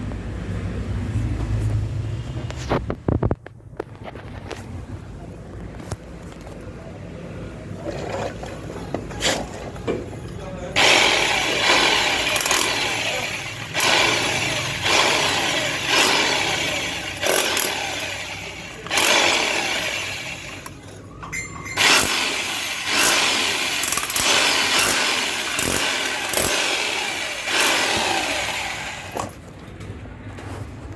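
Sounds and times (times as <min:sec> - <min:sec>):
power tool bursts: 0:10.8 - 0:20.8, 0:21.8 - 0:29.4.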